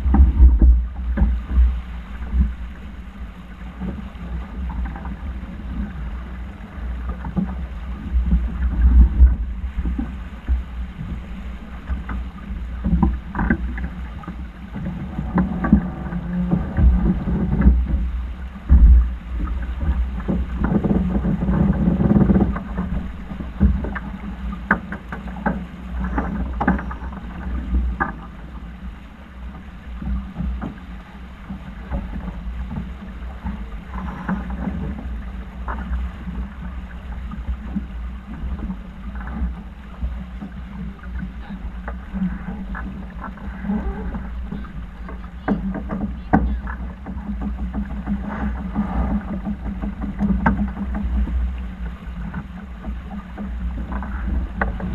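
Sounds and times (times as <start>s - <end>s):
wind buffeting microphone: 0.0s - 28.9s
water rushing along hull: 0.0s - 54.9s.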